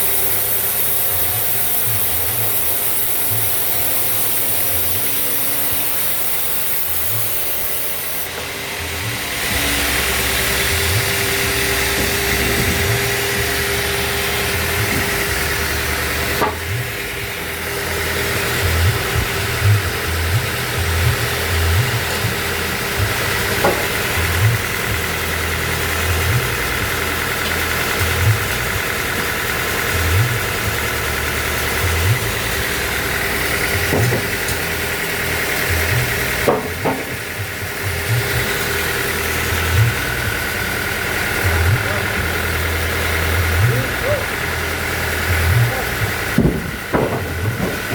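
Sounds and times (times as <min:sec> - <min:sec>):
higher machine whine: 0:00.0 - 0:47.9
sawmill machinery humming: 0:00.0 - 0:47.9
sharp knocks: 0:23.6 - 0:24.0, 0:46.4 - 0:47.9
low thumps: 0:45.3 - 0:47.9.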